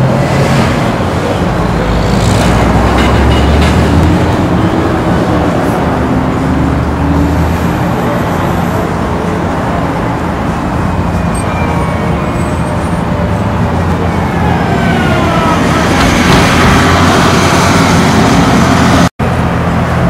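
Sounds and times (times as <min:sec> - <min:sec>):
road traffic noise: 0:00.0 - 0:20.0.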